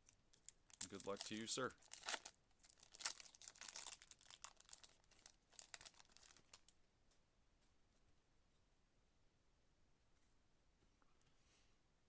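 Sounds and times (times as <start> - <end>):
wrapper tearing and crinkling: 0.3 - 6.7.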